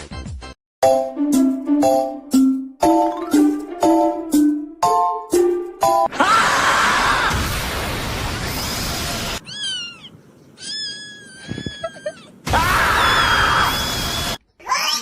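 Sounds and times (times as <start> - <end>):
burst of harsh noise: 7.1 - 9.4
cat meowing: 9.4 - 12.4.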